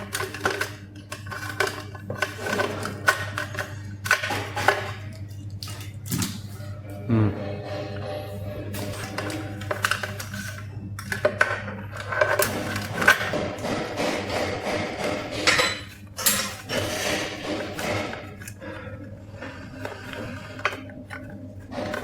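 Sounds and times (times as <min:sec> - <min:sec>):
low steady hum: 0:00.0 - 0:13.6
tools clicking and knocking: 0:08.8 - 0:18.6.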